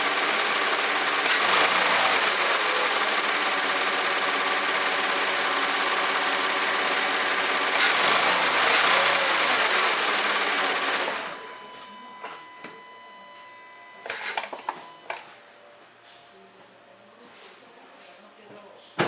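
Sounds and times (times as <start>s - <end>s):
car engine idling: 0.0s - 11.7s.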